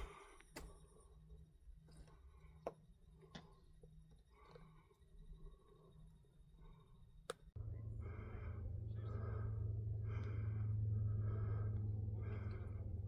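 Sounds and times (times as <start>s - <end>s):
steady low hum: 4.2s - 13.0s
person breathing hard: 7.7s - 13.0s.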